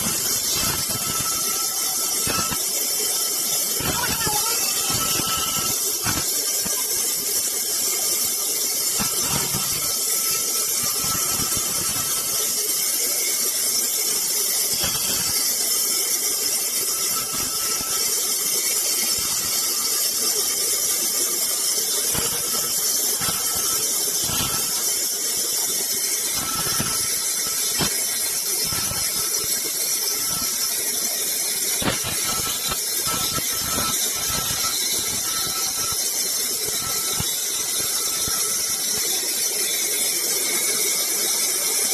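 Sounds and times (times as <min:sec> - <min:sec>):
sawmill blade cutting wood: 0:00.0 - 0:40.6.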